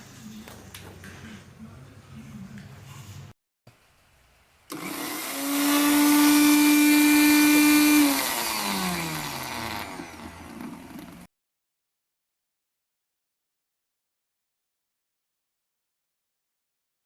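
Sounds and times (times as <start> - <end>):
mixer grinder motor running: 4.7 - 11.3
motor winding down whine: 4.7 - 11.3.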